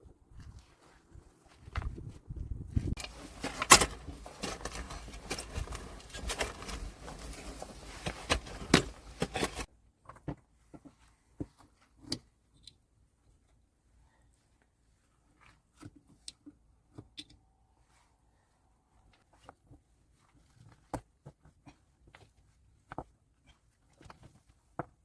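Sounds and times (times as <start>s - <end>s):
handling clicks and knocks: 3.0s - 9.7s.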